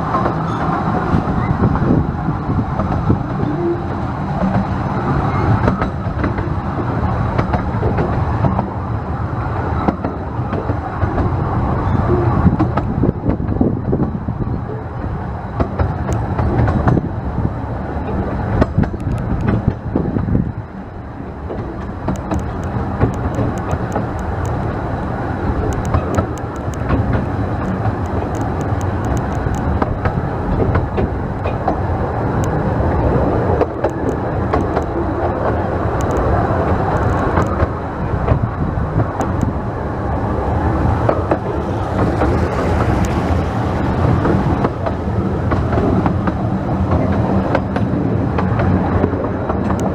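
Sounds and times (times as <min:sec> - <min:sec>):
wind buffeting microphone: 0:11.3 - 0:49.9
wheels ticking on rails: 0:21.8 - 0:38.4, 0:39.0 - 0:47.4
steam train running: 0:39.8 - 0:46.6.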